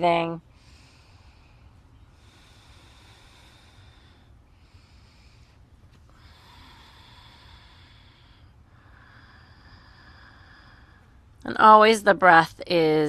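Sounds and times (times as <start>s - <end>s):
woman breathing deeply: 0.4s - 11.4s.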